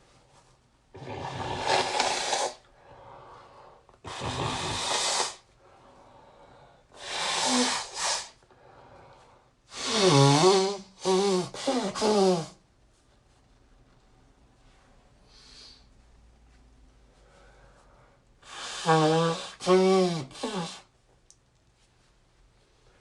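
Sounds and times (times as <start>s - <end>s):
person blowing nose: 0.9s - 2.7s, 4.0s - 5.5s, 7.0s - 8.4s, 9.7s - 12.6s, 18.4s - 20.9s
breaths: 2.6s - 4.0s, 5.5s - 9.6s, 15.2s - 16.0s, 17.1s - 18.8s.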